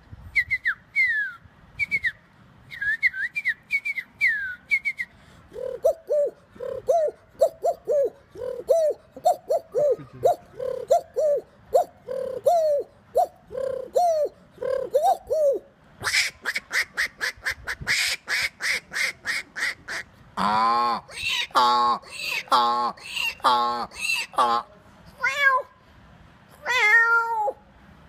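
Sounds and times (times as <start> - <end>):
man imitating bird calls: 5.5 - 24.7.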